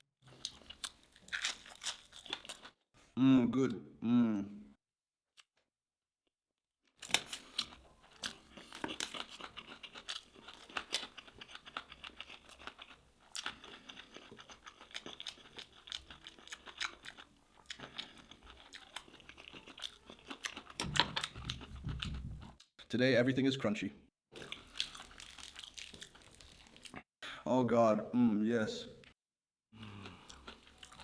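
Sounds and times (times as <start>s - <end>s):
crunching and chewing crispy fish: 0.2s - 2.8s, 7.0s - 22.6s, 24.4s - 27.1s, 29.8s - 31.0s.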